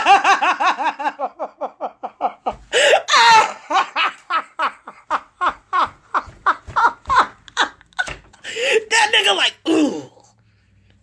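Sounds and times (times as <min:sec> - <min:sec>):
person laughing hard: 0:00.0 - 0:08.7.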